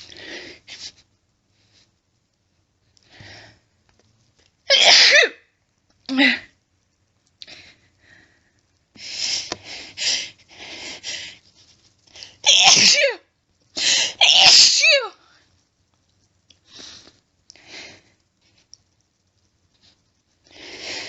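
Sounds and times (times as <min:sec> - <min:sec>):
woman breathing: 0:03.0 - 0:03.7, 0:13.8 - 0:14.2, 0:20.4 - 0:21.0
woman sneezing loudly: 0:04.7 - 0:05.4, 0:12.4 - 0:13.2, 0:14.0 - 0:15.2.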